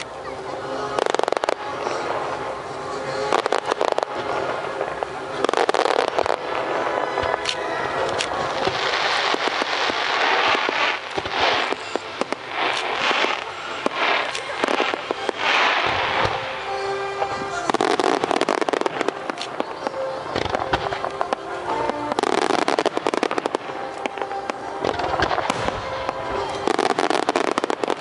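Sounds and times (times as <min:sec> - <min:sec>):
fireworks crackling: 0:00.0 - 0:28.0
music playing: 0:00.0 - 0:28.0
fireworks shells bursting: 0:03.0 - 0:28.0.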